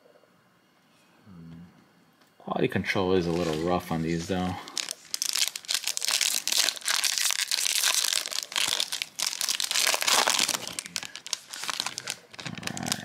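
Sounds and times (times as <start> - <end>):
wrapper crinkling and tearing: 3.2 - 13.0.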